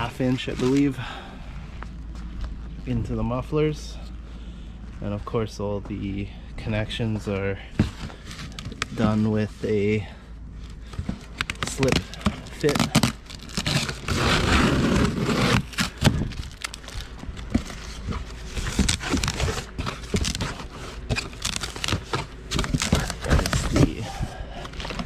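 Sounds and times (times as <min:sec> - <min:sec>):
packaging rustling and crinkling: 0:10.7 - 0:25.0
clicks knocks and scrapes of handling: 0:10.9 - 0:24.0.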